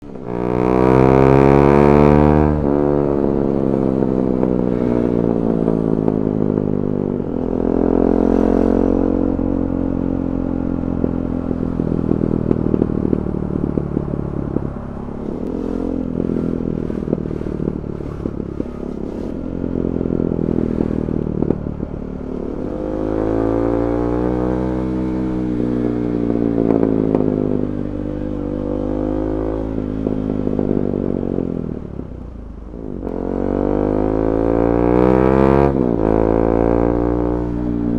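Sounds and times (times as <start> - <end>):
motorcycle engine revving: 0.0 - 37.9
exhaust pops and crackles: 3.5 - 7.6, 9.4 - 33.3.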